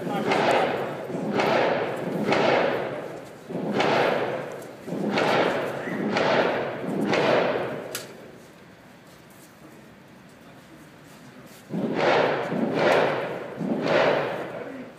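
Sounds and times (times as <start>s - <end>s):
rifle shots echoing: 0.0s - 8.1s, 11.7s - 14.8s.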